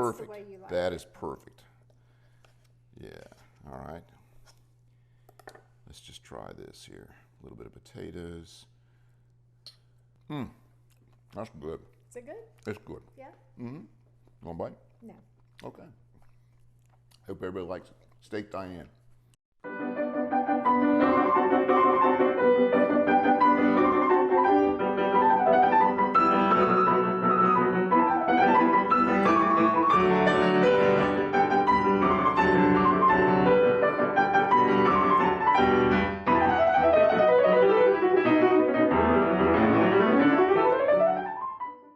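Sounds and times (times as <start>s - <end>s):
piano instrumental music: 19.6s - 41.9s.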